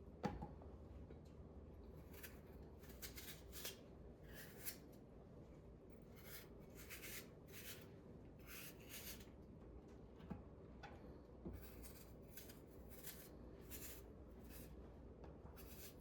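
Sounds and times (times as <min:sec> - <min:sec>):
blade scraping apple skin: 0:02.0 - 0:04.9, 0:06.1 - 0:09.3, 0:11.6 - 0:14.8, 0:15.6 - 0:16.0.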